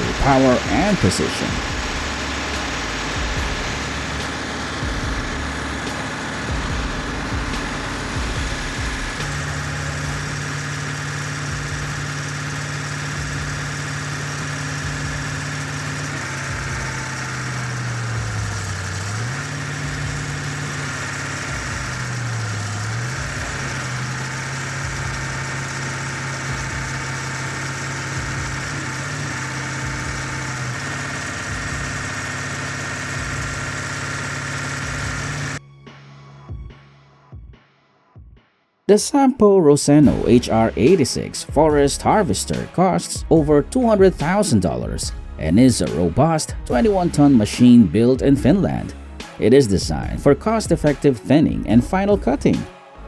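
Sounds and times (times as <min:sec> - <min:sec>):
stump grinder engine running: 0:00.0 - 0:35.6.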